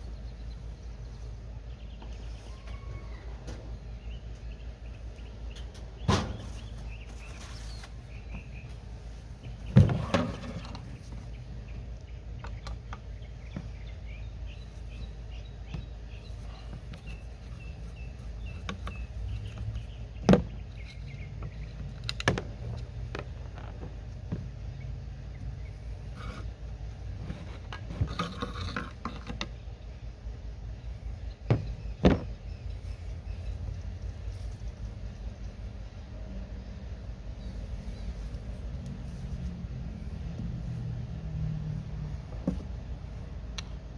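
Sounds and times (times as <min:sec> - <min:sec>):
steady low hum: 0:00.0 - 0:43.9.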